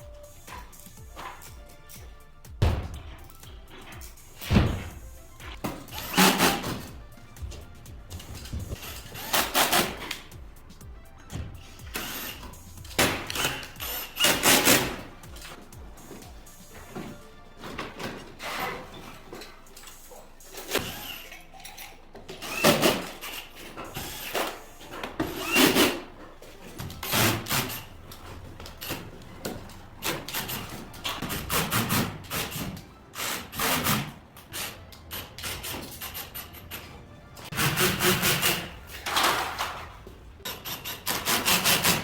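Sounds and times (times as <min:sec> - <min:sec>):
knocks and scrapes of tools: 0:02.6 - 0:10.4, 0:11.2 - 0:42.0
parts and tools clattering: 0:11.0 - 0:33.1, 0:33.7 - 0:42.0.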